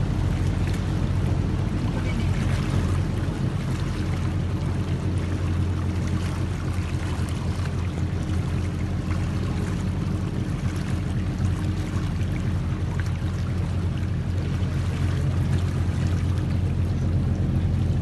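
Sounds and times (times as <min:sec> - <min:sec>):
boat engine humming: 0:00.0 - 0:18.0
water washing: 0:00.0 - 0:18.0.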